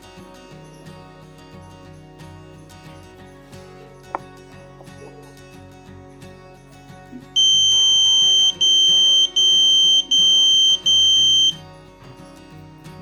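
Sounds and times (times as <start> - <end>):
quiet background music: 0.0 - 13.0
electronic buzzer high-pitched tone: 7.4 - 11.6.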